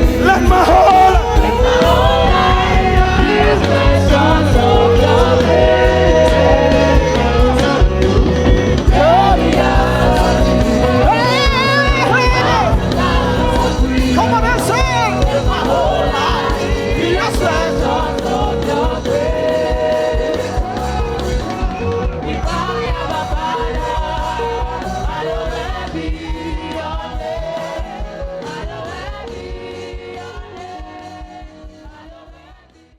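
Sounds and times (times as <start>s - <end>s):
gospel singing with band: 0.0s - 32.9s.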